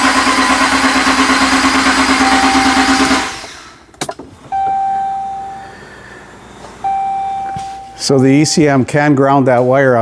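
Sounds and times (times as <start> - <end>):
engine cranking without starting: 0.0 - 7.9
electronic chime tone: 2.2 - 3.2, 4.5 - 6.2, 6.8 - 8.1.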